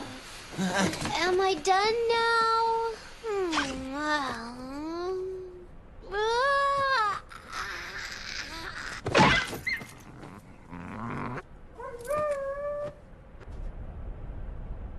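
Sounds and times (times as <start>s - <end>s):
hiss of noise: 0.0s - 5.6s.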